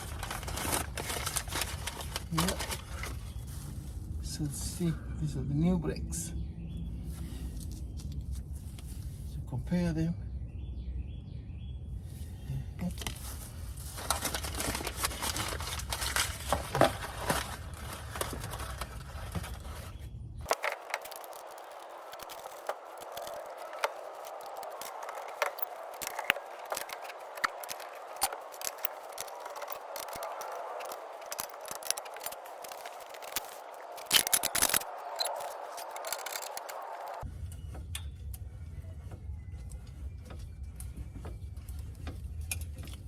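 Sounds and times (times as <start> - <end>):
tools clicking and scraping: 13.8 - 43.0.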